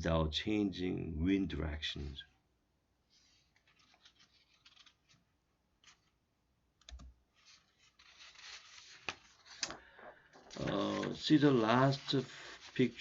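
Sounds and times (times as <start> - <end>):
short scratching strokes: 10.6 - 13.0.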